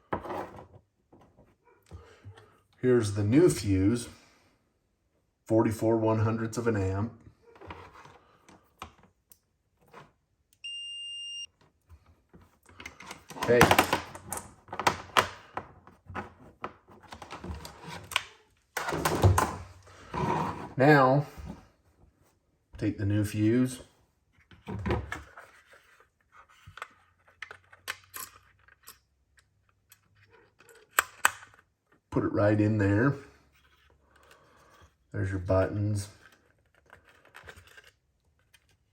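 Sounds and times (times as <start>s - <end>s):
multimeter continuity beep: 10.6s - 11.5s.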